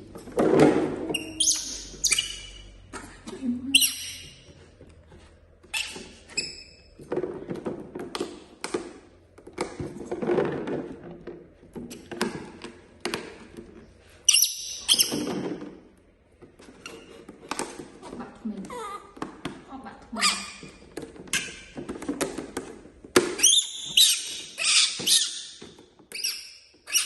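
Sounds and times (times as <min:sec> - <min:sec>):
knocks and thuds of objects: 0:00.0 - 0:01.1
short high squeaks: 0:01.2 - 0:02.8.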